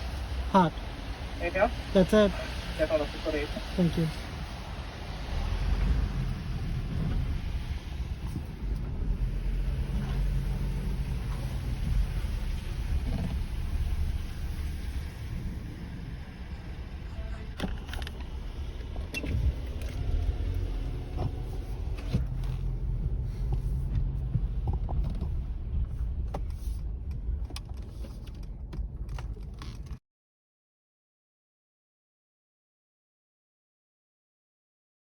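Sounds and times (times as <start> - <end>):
car cabin rumble: 0.0 - 30.0
clicks and light rattles: 26.2 - 30.0.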